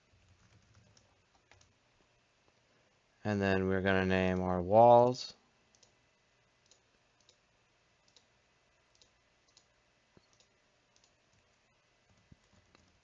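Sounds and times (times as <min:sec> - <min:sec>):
computer mouse clicks: 0:00.2 - 0:01.8, 0:05.7 - 0:06.0, 0:06.6 - 0:07.4, 0:08.0 - 0:08.3, 0:08.9 - 0:13.0.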